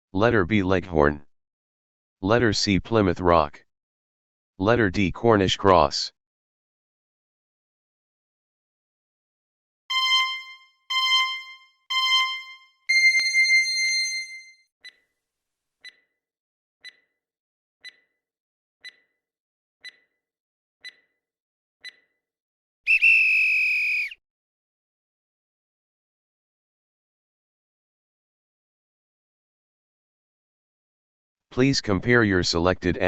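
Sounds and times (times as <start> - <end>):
electronic beeps: 9.9 - 14.4
buzzer alarm tone: 9.9 - 14.6
faint timer ticks: 14.8 - 15.1, 15.8 - 16.2, 16.8 - 17.2, 17.8 - 18.2, 18.8 - 19.2, 19.8 - 20.2, 20.8 - 21.2, 21.8 - 22.2.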